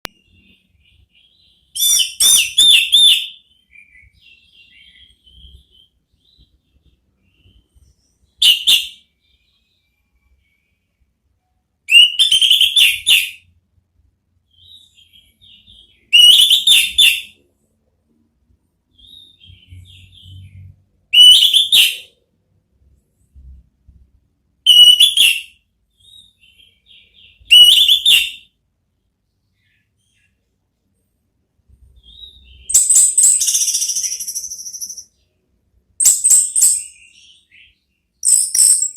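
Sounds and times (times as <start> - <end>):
soft twittering: 32.0 - 35.2, 38.2 - 38.9.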